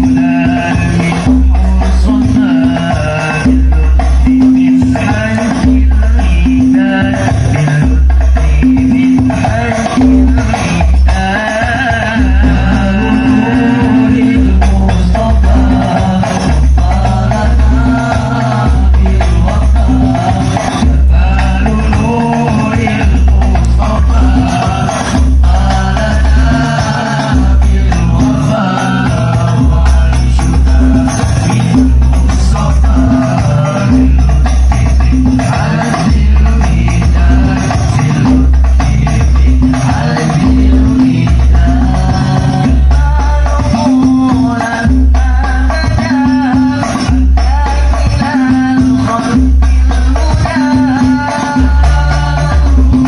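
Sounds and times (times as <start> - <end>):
frame drums: 0.0 - 53.0
voices chanting devotional song: 0.0 - 53.0
person singing ornamented melody: 8.8 - 34.0.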